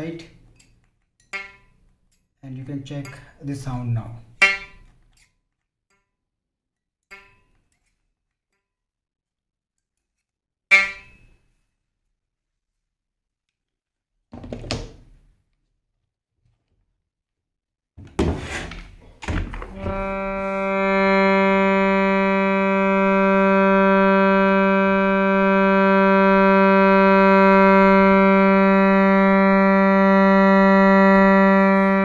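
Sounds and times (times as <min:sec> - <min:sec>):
reed drone: 0:19.7 - 0:32.0.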